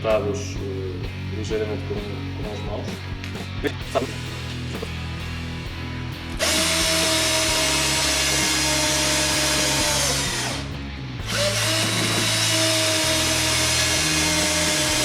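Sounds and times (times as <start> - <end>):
background music: 0.0 - 15.0
cordless drill driving a screw: 6.4 - 15.0.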